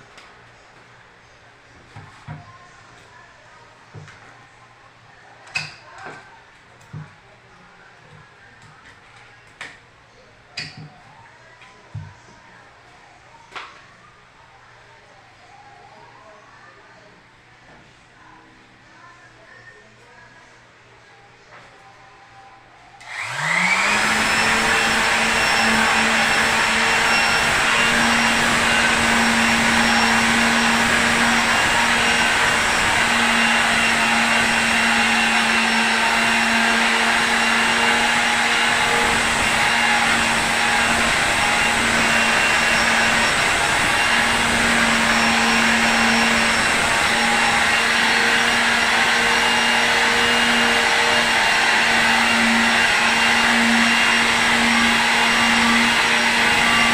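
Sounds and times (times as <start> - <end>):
small electric motor whirring: 23.0 - 56.9.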